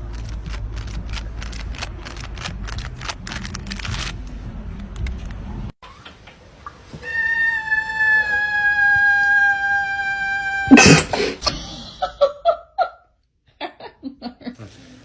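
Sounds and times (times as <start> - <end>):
pet animal long call: 7.0 - 11.1.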